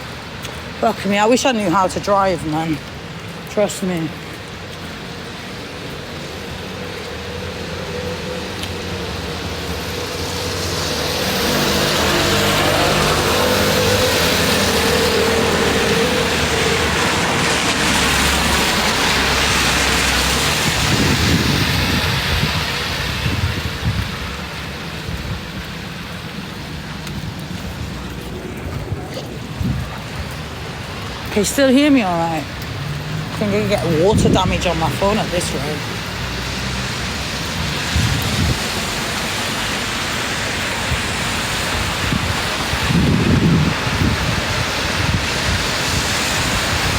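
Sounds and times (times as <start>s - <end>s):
heavy rain: 0.0s - 46.9s
tyres hissing on wet road: 0.0s - 46.9s
wind buffeting microphone: 12.0s - 46.9s.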